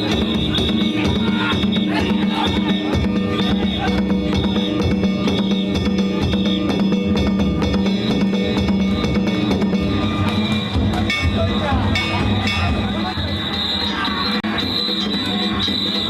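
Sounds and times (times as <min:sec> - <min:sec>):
taiko drums beating: 0:00.0 - 0:16.0
hand-struck gongs ringing: 0:05.8 - 0:13.1.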